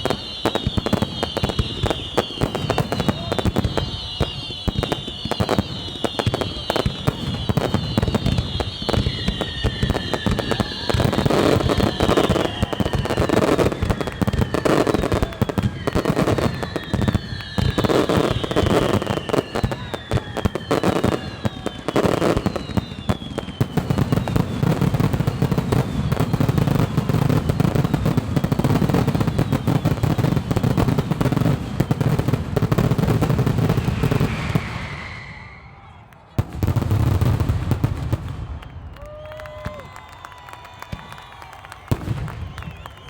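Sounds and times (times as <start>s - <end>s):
falling firework whistles: 0.0s - 43.0s
firework bangs and crackling: 0.0s - 43.0s.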